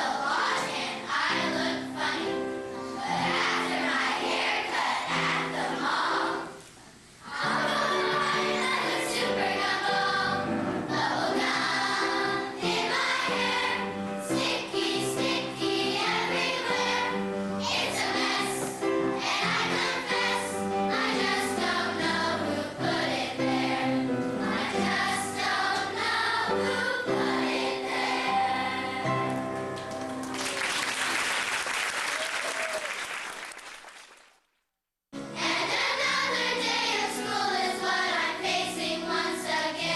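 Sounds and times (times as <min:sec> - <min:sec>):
choir singing with accompaniment: 0:00.0 - 0:06.6, 0:07.2 - 0:29.6, 0:35.2 - 0:39.9
audience applause: 0:29.6 - 0:34.4.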